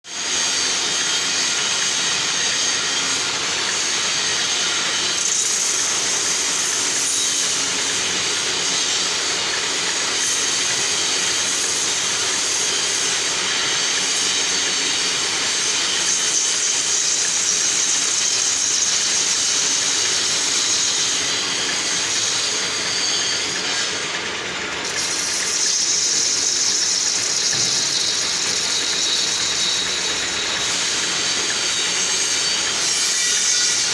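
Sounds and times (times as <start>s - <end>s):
metal lathe machining with hiss: 0.1s - 33.9s.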